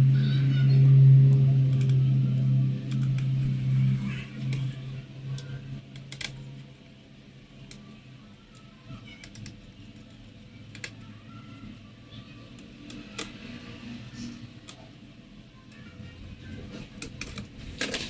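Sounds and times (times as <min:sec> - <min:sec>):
small laptop parts clicking: 0:00.8 - 0:03.8, 0:04.5 - 0:06.6, 0:07.6 - 0:11.2, 0:12.5 - 0:15.0.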